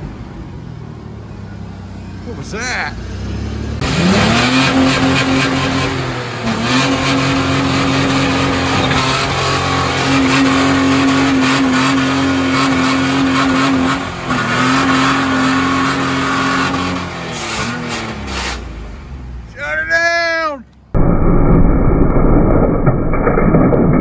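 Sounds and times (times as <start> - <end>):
car engine at high revs: 0.0 - 19.7
tire and road noise: 0.0 - 24.0.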